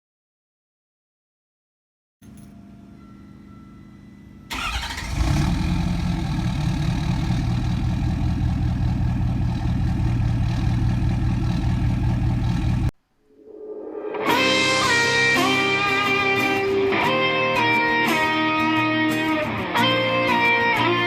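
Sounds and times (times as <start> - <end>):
diesel engine starting and running: 4.5 - 12.9.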